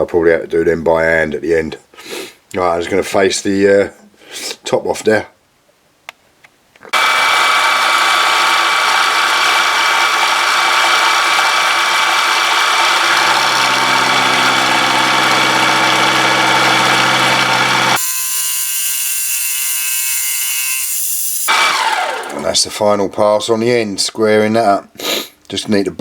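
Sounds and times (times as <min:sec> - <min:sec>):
milling machine cutting steel: 0:07.0 - 0:22.6
low hum: 0:13.0 - 0:18.0.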